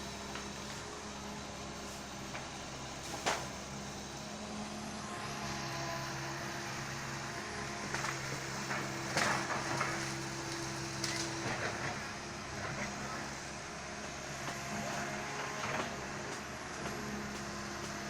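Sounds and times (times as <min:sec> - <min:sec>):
excavator diesel engine running: 0:00.0 - 0:18.0
cracks and rustles: 0:07.9 - 0:12.0.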